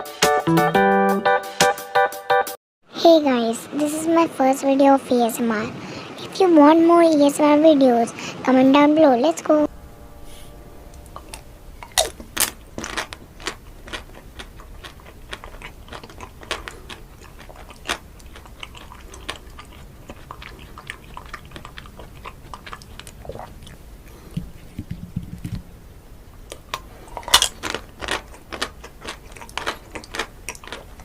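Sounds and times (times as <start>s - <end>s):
crunchy bites: 11.2s - 23.8s, 26.5s - 31.0s
chewing crackles and mouth clicks: 11.2s - 24.4s, 26.5s - 31.0s.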